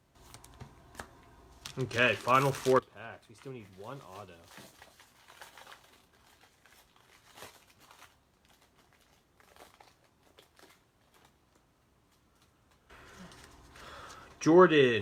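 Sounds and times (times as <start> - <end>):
wrapper crinkling and tearing: 0.2 - 14.2.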